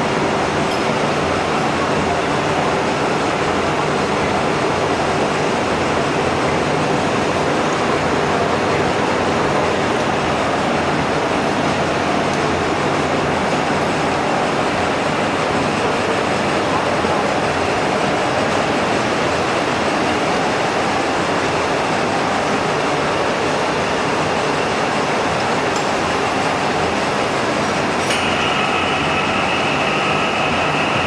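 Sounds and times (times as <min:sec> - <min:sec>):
metal lathe running: 0:24.4 - 0:31.0.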